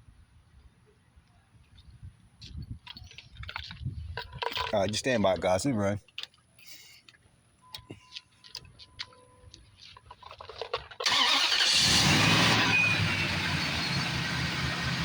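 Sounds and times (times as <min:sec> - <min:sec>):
truck engine starting and running: 0:10.8 - 0:15.0.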